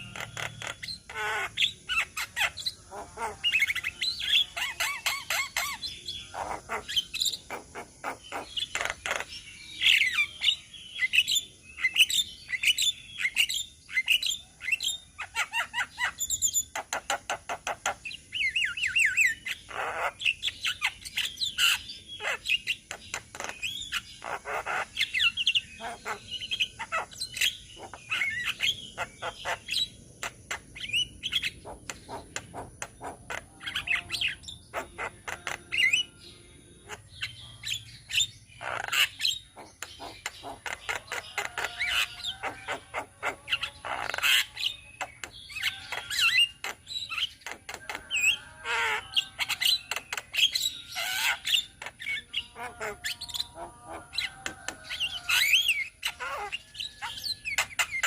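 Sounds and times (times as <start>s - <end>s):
mynas chattering: 31.5s - 57.9s.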